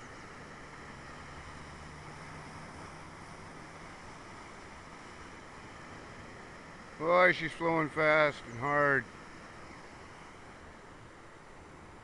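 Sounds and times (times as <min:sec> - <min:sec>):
river rushing: 0:00.0 - 0:12.0.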